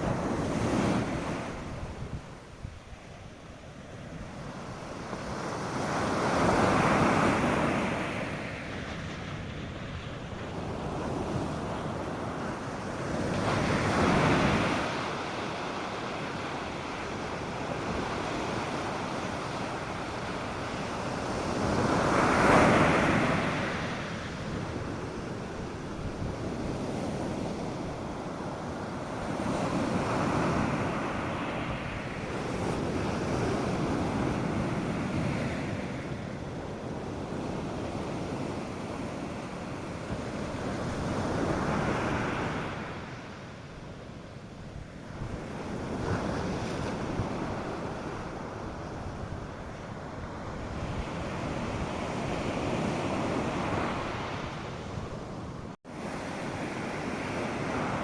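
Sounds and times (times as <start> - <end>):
surf breaking on beach: 4.4 - 43.4.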